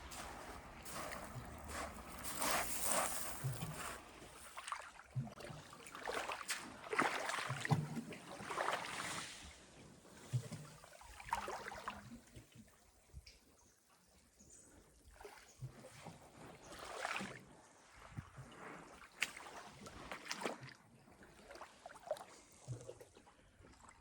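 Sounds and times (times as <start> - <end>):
small waves lapping and splashing: 0.0 - 24.0.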